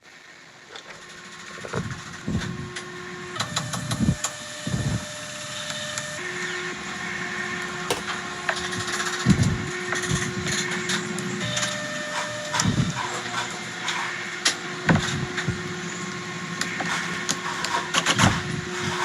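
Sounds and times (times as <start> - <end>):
small electric motor humming: 1.0 - 8.1, 8.8 - 19.0.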